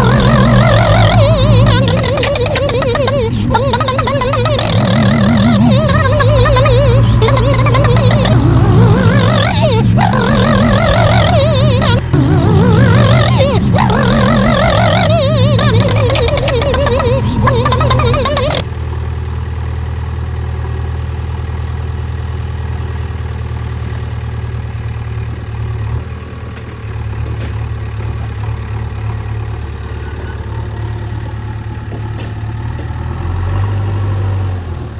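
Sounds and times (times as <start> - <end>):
wavering high tone: 0.0 - 18.6
diesel engine running: 0.0 - 34.9.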